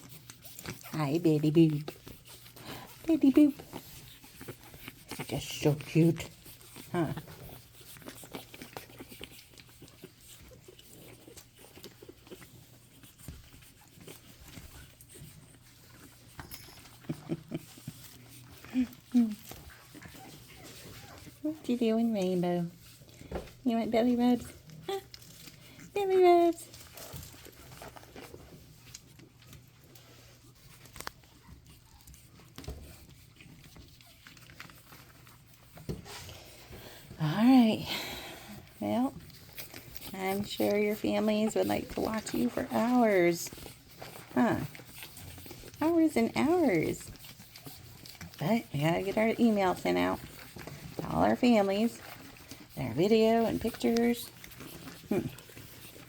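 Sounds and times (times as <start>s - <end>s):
puppies clicking and scuffling: 0.0s - 56.0s.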